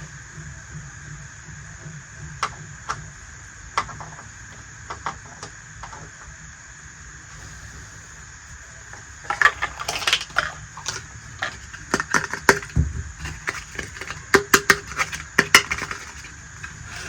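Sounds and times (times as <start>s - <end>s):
background hiss and hum: 0.0s - 17.0s
plastic toy pieces clicking: 9.2s - 17.0s.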